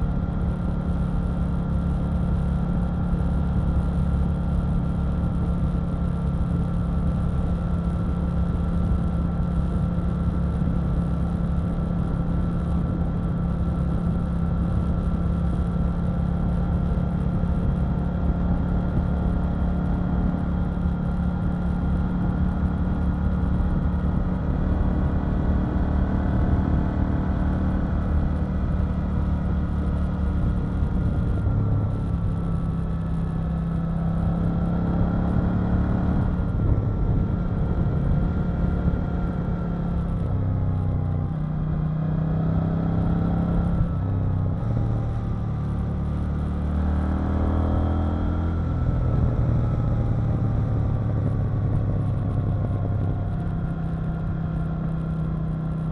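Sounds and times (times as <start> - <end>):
motorcycle engine running: 0.0 - 55.9.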